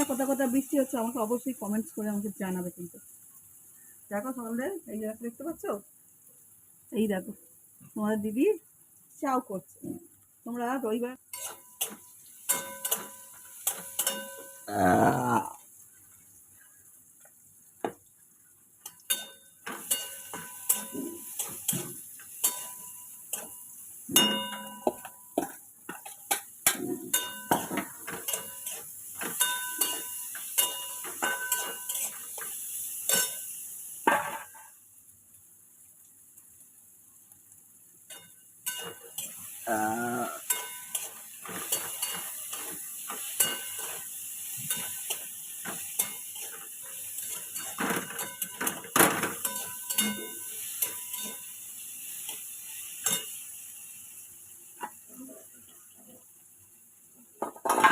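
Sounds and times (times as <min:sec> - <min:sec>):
frying sizzle: 0:00.0 - 0:57.9
metal utensil clinking in pan: 0:11.3 - 0:14.7, 0:18.8 - 0:33.5, 0:38.1 - 0:39.4, 0:40.4 - 0:51.5, 0:53.0 - 0:53.4.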